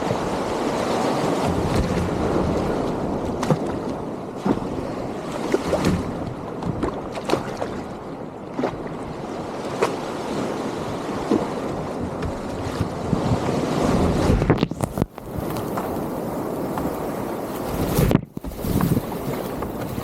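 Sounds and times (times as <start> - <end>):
waves washing over grass: 0.0 - 20.0
wind on microphone: 0.0 - 20.0
sharp splashes and knocks: 1.3 - 7.9.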